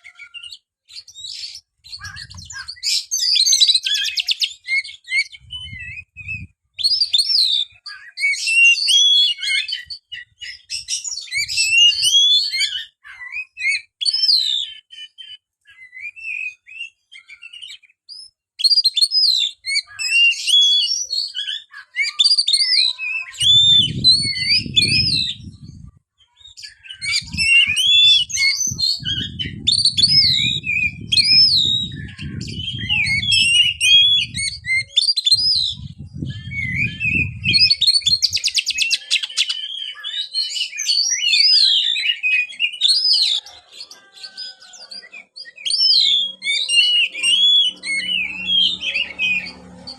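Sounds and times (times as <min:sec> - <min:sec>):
bird singing whistled phrases: 0:00.0 - 0:49.9
low rumble: 0:29.0 - 0:34.8, 0:35.8 - 0:37.7.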